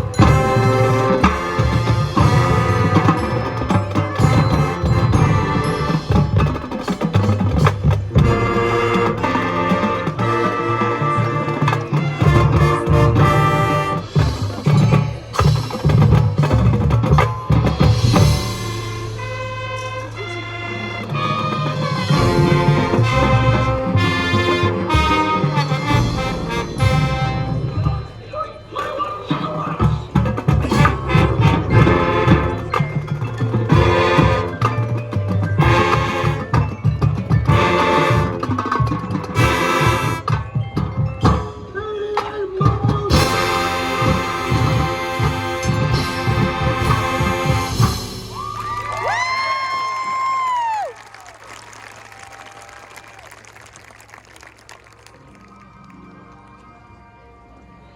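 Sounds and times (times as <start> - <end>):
brass chords: 0.0 - 16.5, 18.0 - 41.4, 43.1 - 48.4
drums and percussion: 0.0 - 56.1
marching band playing: 0.0 - 57.6.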